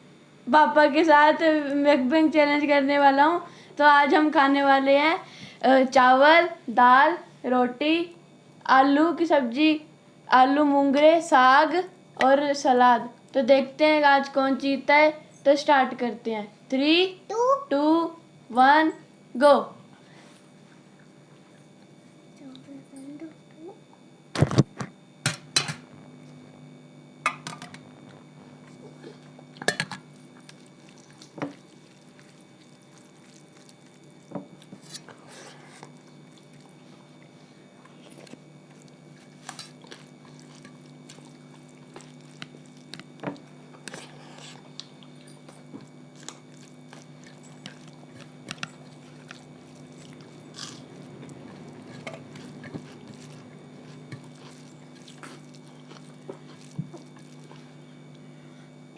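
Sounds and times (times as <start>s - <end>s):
people chewing: 28.5s - 58.6s.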